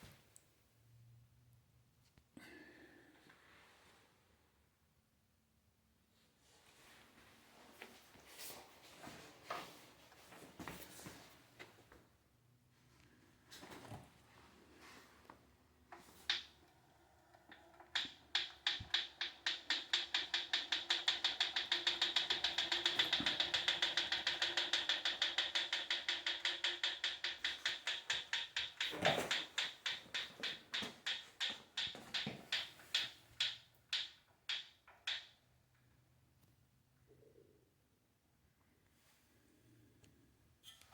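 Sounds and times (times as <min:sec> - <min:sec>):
exercise bike ticking: 0:15.9 - 0:35.3.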